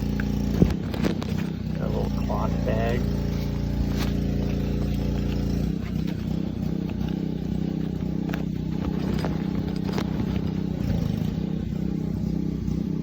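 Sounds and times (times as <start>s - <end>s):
engine humming: 0.0s - 13.0s.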